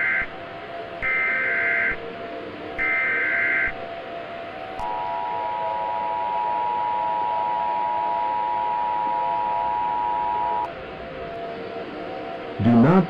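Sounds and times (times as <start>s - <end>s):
two-tone alarm signal: 0.0s - 0.4s, 1.0s - 2.1s, 2.8s - 4.0s, 4.6s - 10.7s.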